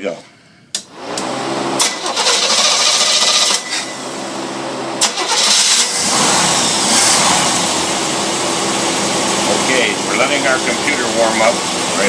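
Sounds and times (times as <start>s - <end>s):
engine running unevenly: 5.9s - 12.0s.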